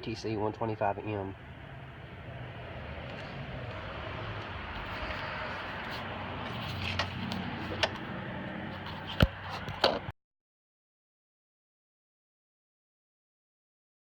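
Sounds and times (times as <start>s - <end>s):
sharp clicks and knocks: 6.7s - 8.0s, 8.8s - 10.1s.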